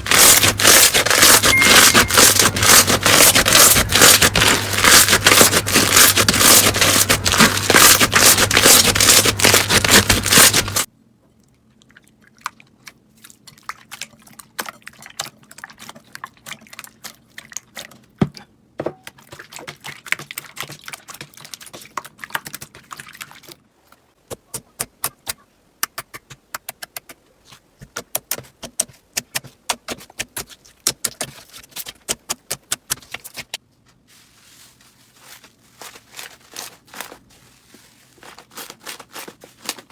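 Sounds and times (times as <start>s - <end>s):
slime crunching crackle: 0.0s - 10.9s, 35.1s - 39.9s.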